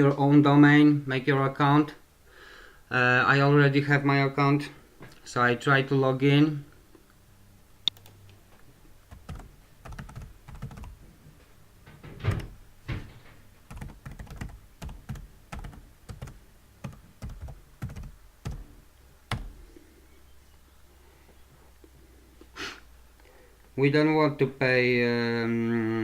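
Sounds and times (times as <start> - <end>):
typing on computer keyboard: 9.1 - 11.0, 13.7 - 18.6.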